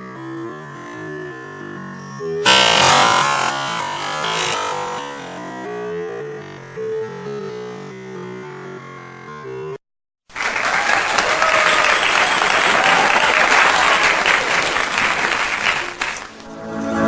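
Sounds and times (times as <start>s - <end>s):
crowd applauding and cheering: 10.3s - 16.4s
music: 16.4s - 17.0s.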